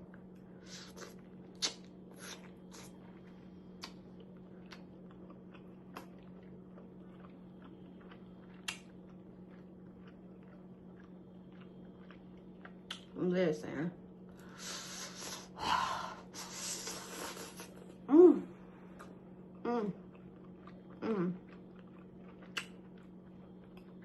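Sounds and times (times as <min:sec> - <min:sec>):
steady low hum: 0:00.0 - 0:24.0
person chewing with mouth smacks: 0:00.1 - 0:13.2, 0:19.0 - 0:24.0.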